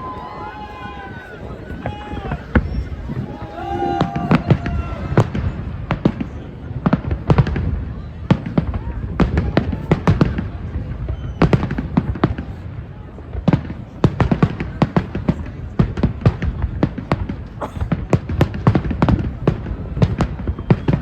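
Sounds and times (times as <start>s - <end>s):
firecrackers banging: 0.0s - 10.9s
rumble of distant explosions: 0.0s - 21.0s.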